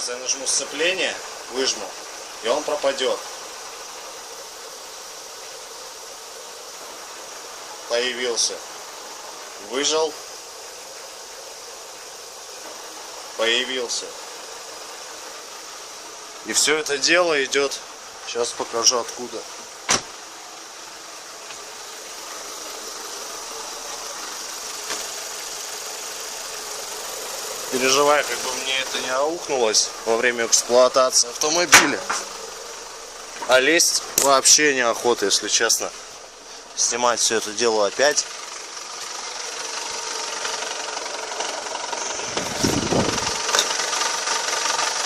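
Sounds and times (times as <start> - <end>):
car engine idling: 0.0 - 45.0
extra engine noise: 0.0 - 45.0
clutch knocking: 38.0 - 45.0.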